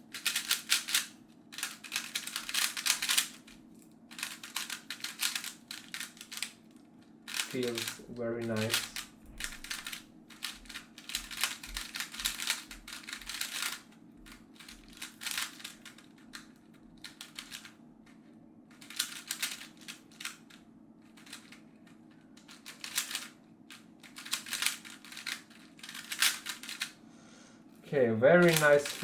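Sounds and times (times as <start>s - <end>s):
speed cube clicking: 0.0s - 6.6s, 7.3s - 17.7s, 18.7s - 20.6s, 21.2s - 21.6s, 22.4s - 27.0s, 28.4s - 29.0s.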